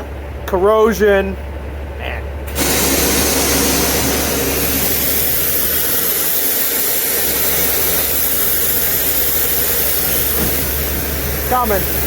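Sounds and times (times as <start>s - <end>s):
truck engine droning: 0.0s - 12.0s
constant hiss: 2.5s - 12.0s.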